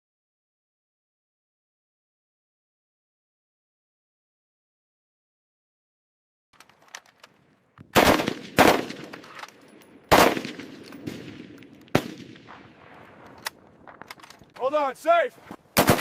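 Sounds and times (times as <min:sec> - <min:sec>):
machine gun firing: 0:08.0 - 0:09.3, 0:10.1 - 0:13.0, 0:15.8 - 0:16.0.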